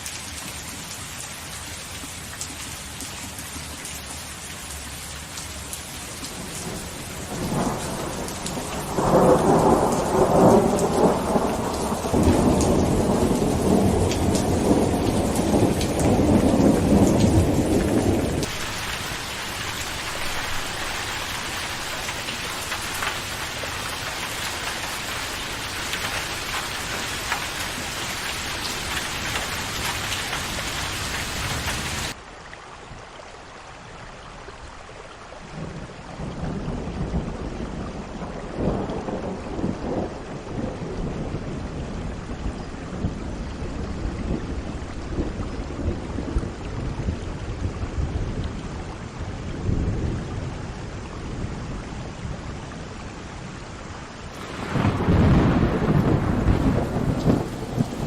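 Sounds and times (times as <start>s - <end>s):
steady rainfall: 0.0s - 58.0s
thunder rumbling: 6.3s - 32.2s, 54.4s - 58.0s.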